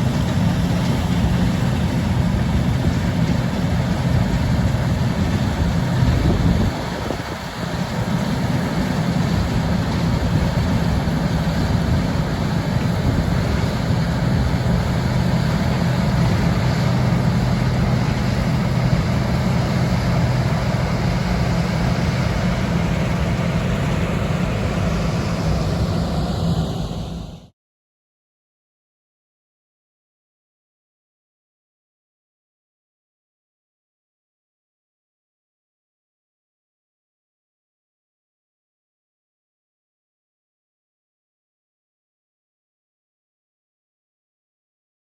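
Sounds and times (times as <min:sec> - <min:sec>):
diesel farm machinery running: 0:00.0 - 0:27.5.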